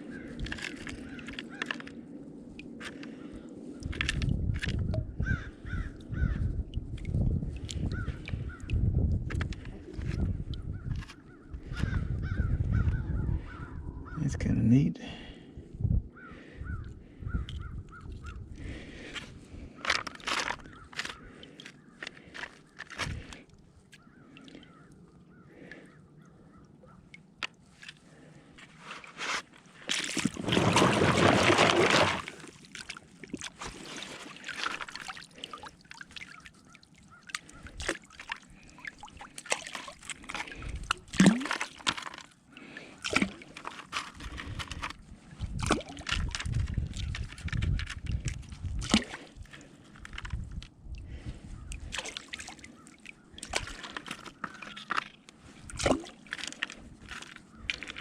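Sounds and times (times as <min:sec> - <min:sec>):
water sloshing and splashing: 0:00.0 - 0:12.0, 0:17.1 - 0:58.0
stones clicking and rattling: 0:19.8 - 0:23.3, 0:41.2 - 0:42.3, 0:43.2 - 0:45.0
rush of water: 0:30.0 - 0:36.7.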